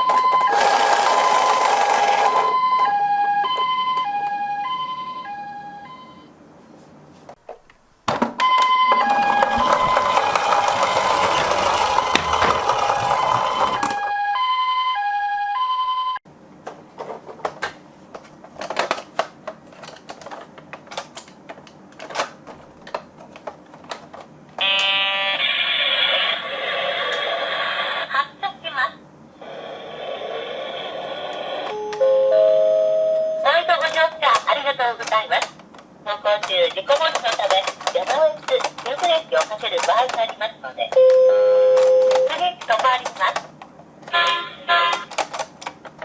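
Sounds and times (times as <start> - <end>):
toy two-tone siren: 0.0 - 6.2, 8.4 - 16.2
sharp clicks and knocks: 33.8 - 40.4, 44.9 - 46.0.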